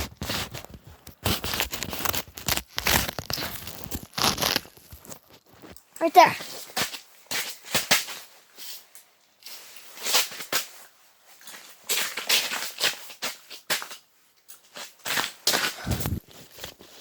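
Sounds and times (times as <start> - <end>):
crunching and rustling: 0.0 - 8.8.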